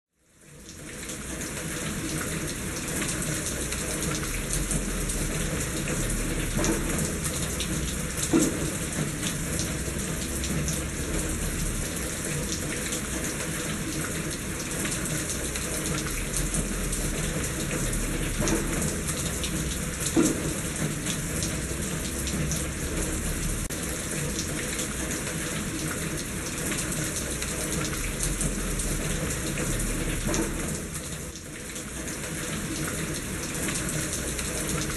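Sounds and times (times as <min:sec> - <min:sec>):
steady rain: 0:00.1 - 0:34.9
water running in a gutter: 0:00.2 - 0:34.9.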